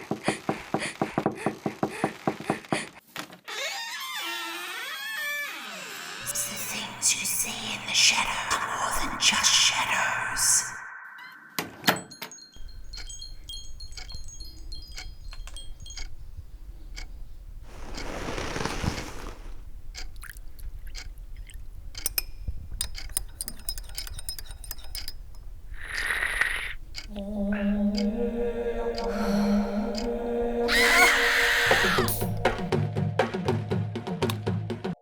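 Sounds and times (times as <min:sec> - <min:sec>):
wind chimes tinkling: 0:11.2 - 0:17.0
sharp clicks and ticks: 0:12.6 - 0:17.2, 0:19.8 - 0:27.2
soft whooshing: 0:17.6 - 0:19.6.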